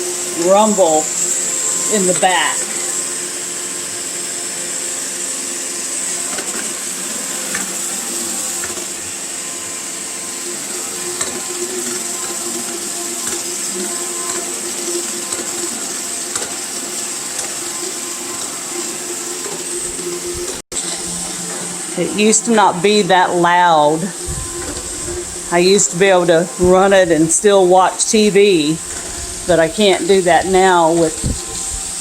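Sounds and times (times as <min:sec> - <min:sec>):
robot vacuum whirring: 0:00.0 - 0:32.0
low rumble: 0:24.2 - 0:25.8.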